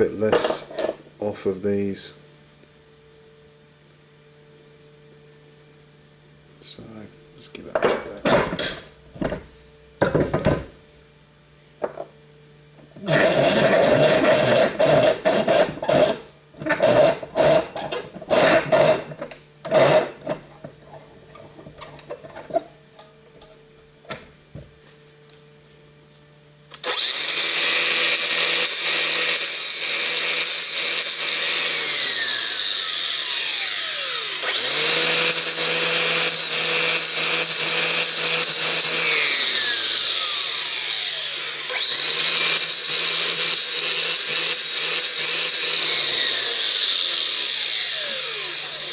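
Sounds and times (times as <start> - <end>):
angle grinder grinding steel: 13.0 - 20.4, 26.8 - 48.9.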